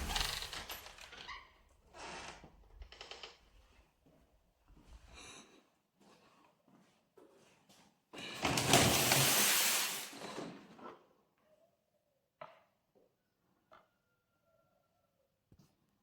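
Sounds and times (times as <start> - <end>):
door scraping open: 0.0 - 1.4.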